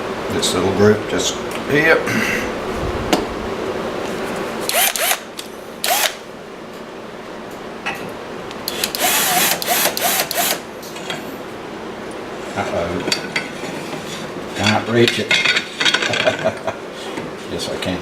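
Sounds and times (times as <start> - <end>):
cordless drill motor bursts: 4.6 - 6.2, 8.7 - 10.6.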